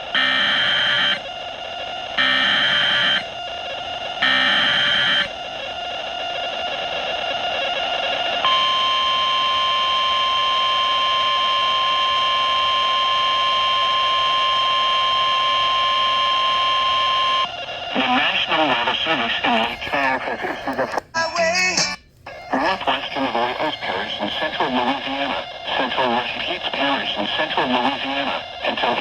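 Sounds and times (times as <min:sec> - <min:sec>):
steady warning alarm tone: 0:00.2 - 0:01.2, 0:02.2 - 0:03.2, 0:04.2 - 0:05.3
radio hiss: 0:18.0 - 0:29.0.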